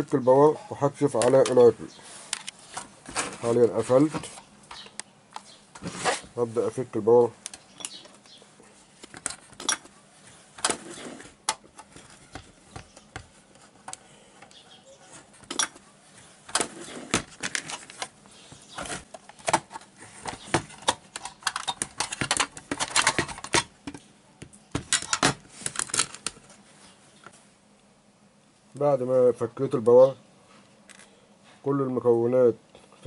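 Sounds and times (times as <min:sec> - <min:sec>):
clicks and scrapes of casing: 0:16.5 - 0:24.0.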